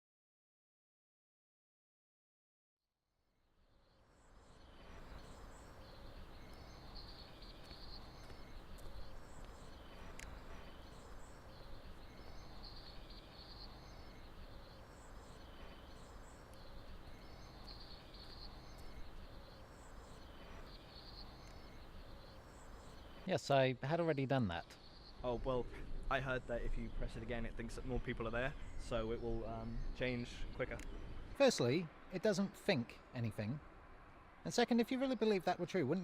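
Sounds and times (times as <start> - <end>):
high chirping: 4.6 - 23.5.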